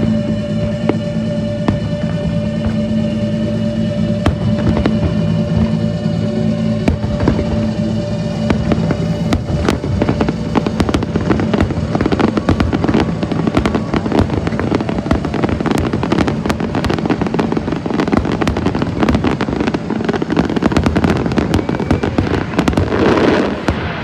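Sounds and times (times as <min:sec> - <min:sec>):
fireworks crackling and popping: 0:00.0 - 0:24.0.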